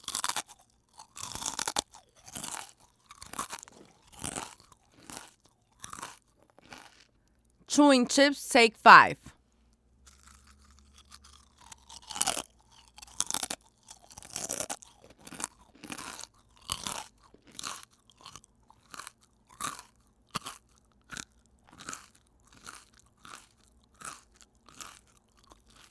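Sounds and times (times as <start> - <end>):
person chewing potato chips: 0.0 - 7.1, 10.2 - 25.9.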